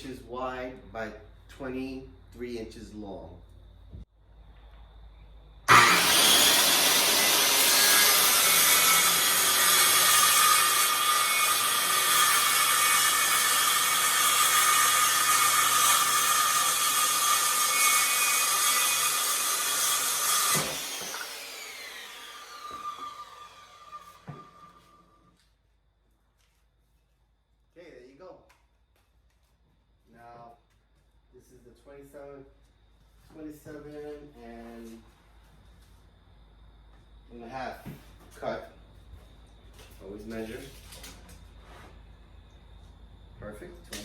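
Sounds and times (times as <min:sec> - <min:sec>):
power saw cutting board: 0:05.7 - 0:25.2
saw blade spinning down: 0:05.7 - 0:25.2.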